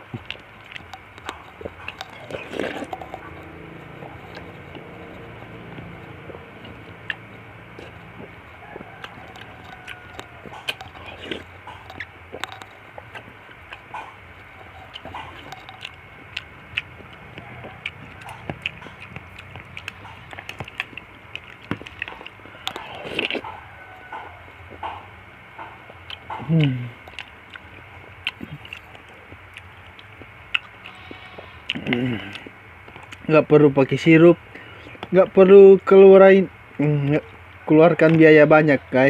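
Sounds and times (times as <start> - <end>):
chewing and mouth clicks: 0.0 - 34.0.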